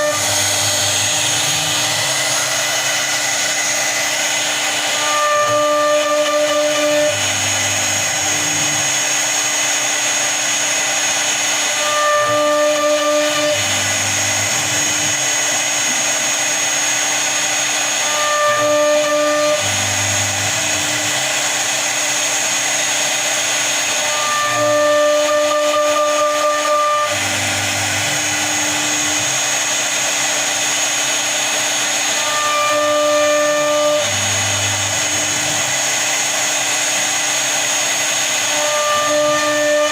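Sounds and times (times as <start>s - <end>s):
humming motor tones: 0.0s - 9.4s, 18.0s - 22.0s
router spindle whining: 0.0s - 39.9s.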